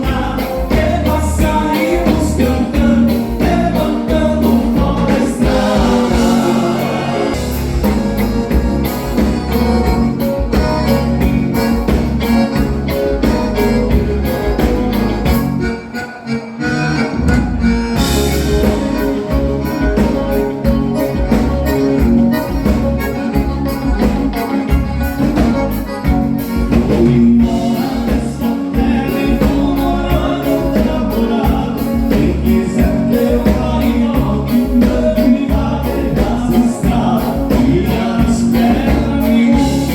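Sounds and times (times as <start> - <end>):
person singing: 0.0 - 8.0, 26.7 - 39.9
live band playing dance rhythm: 0.0 - 39.9.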